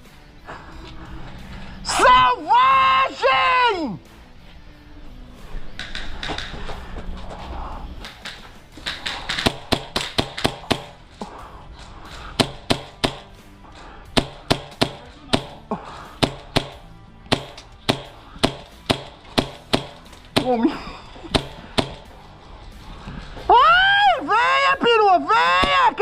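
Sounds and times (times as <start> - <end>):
airsoft pistol shots: 8.2 - 11.0, 12.4 - 13.4, 14.1 - 15.6, 16.2 - 20.6, 21.3 - 22.1.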